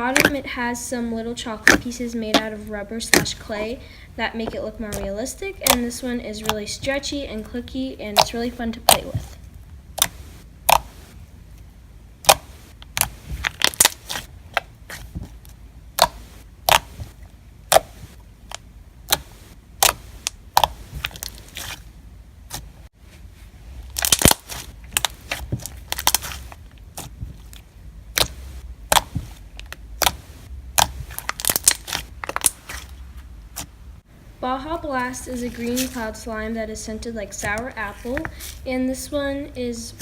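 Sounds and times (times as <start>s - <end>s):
slime clicking and popping: 0.2s - 0.4s, 1.6s - 2.5s, 9.9s - 11.0s, 12.2s - 14.7s, 15.9s - 17.0s, 17.7s - 21.8s, 24.0s - 32.9s.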